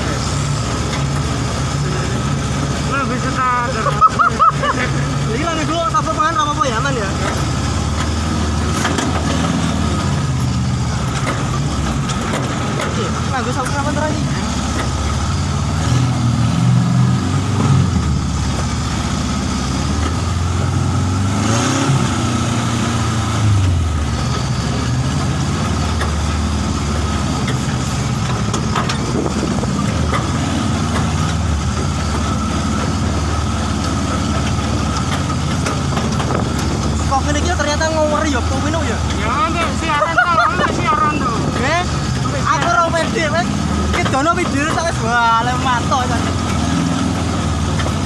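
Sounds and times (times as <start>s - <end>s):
vehicle engines revving: 0.0s - 48.0s.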